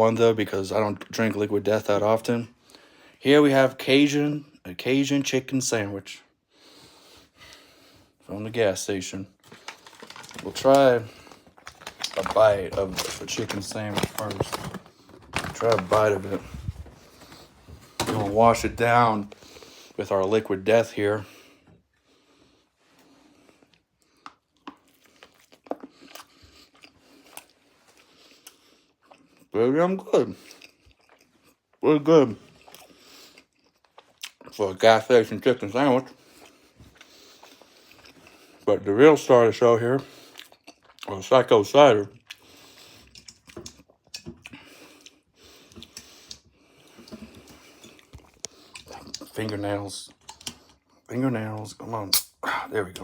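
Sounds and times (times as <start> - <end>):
person chewing food: 11.1 - 18.0, 23.0 - 29.6, 30.4 - 31.8, 32.4 - 34.5, 36.1 - 38.6, 40.1 - 41.1, 42.2 - 51.1.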